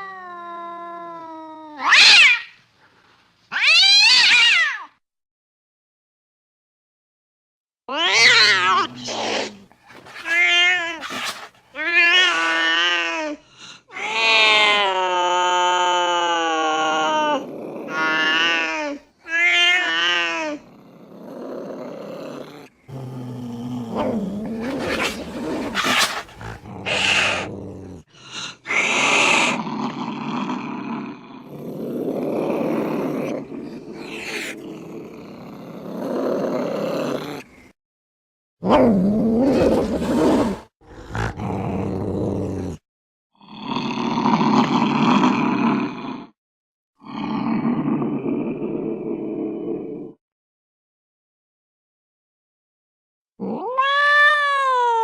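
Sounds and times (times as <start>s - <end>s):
cat growling and hissing: 0.0s - 2.6s, 3.5s - 5.0s, 7.9s - 37.8s, 38.6s - 42.8s, 43.4s - 46.4s, 47.0s - 50.2s, 53.4s - 55.0s
cat yowling: 0.0s - 2.6s, 3.5s - 5.0s, 7.9s - 9.6s, 13.9s - 20.7s, 53.5s - 55.0s.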